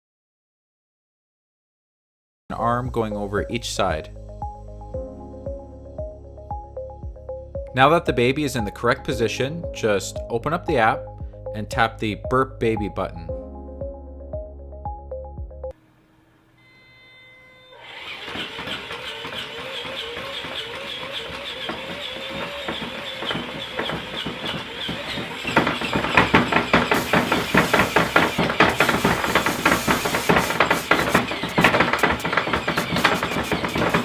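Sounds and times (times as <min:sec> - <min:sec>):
very fast clattering rattle: 0:17.9 - 0:34.0.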